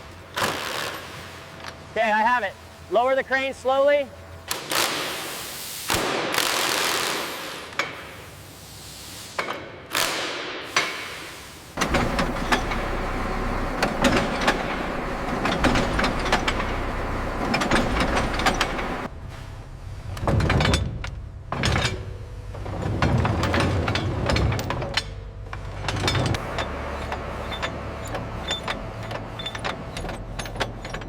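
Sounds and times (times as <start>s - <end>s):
mechanical clattering and ticking: 11.8s - 19.1s
metallic knocks: 11.8s - 19.1s
heavy low rumble: 11.8s - 26.4s
low hum: 11.8s - 31.0s.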